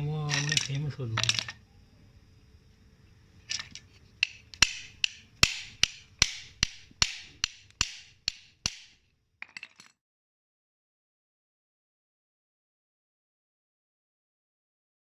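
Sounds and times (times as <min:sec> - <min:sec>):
sharp ringing knocks: 0:04.2 - 0:09.0.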